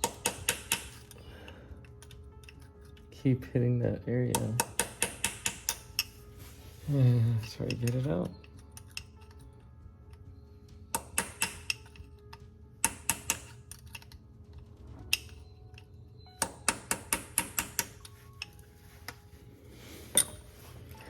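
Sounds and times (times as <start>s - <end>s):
hammer tapping a metal punch: 0.0s - 1.1s, 4.3s - 6.1s, 10.9s - 12.0s, 12.8s - 14.0s, 16.4s - 18.6s.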